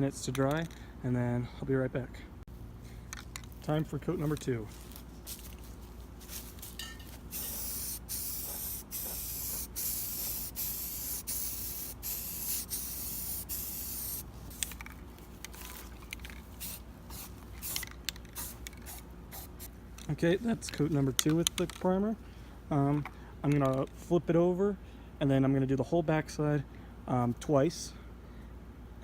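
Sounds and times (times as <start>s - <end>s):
aerosol can spraying hiss: 7.3s - 14.7s, 16.6s - 19.7s.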